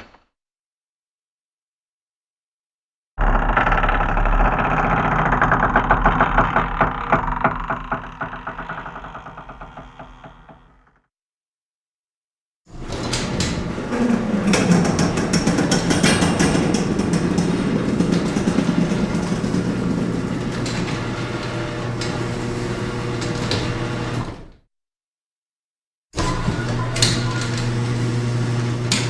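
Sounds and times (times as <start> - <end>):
door opening: 3.2 - 11.1, 12.8 - 22.3.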